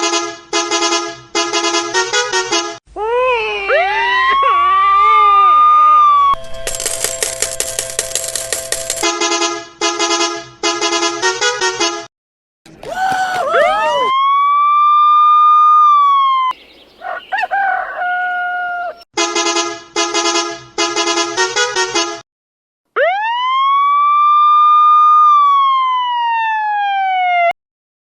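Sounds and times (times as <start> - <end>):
multi-note bus horn blasts: 0.0 - 2.8, 9.0 - 12.1, 19.2 - 22.2
police siren wail: 3.6 - 6.5, 13.0 - 16.5, 17.1 - 19.0, 23.0 - 27.5.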